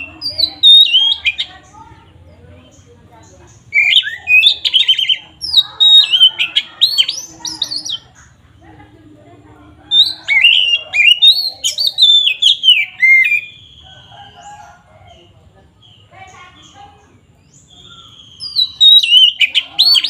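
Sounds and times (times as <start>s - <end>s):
bird singing whistled notes: 0.0s - 1.5s, 3.6s - 8.0s, 9.9s - 14.5s, 17.4s - 20.0s.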